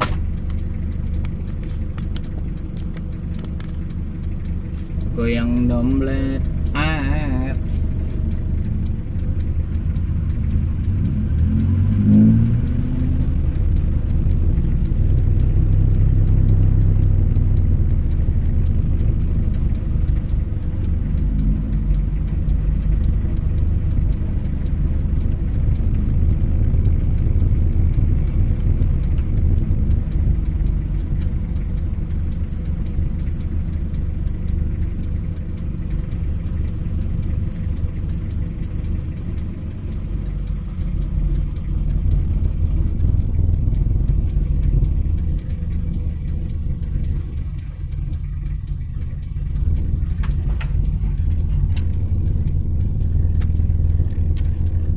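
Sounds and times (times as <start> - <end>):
vehicle engine and road rumble: 0.0 - 54.9.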